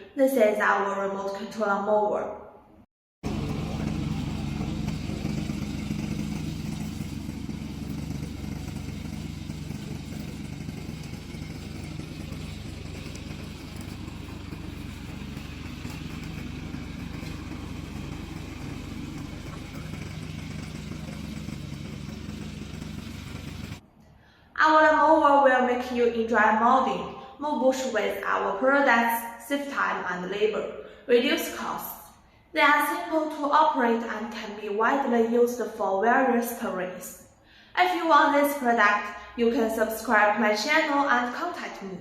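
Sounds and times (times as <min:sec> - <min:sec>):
mower engine running: 0:03.2 - 0:23.8.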